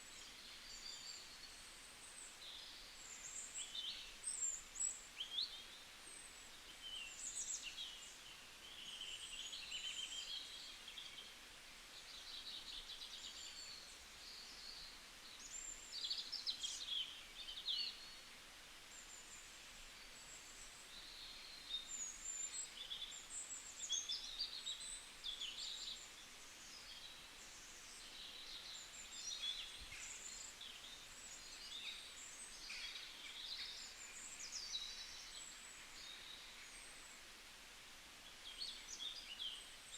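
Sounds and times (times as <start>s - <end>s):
faint steady hiss: 0.0s - 39.9s
songbirds chirping and trilling: 19.0s - 37.4s.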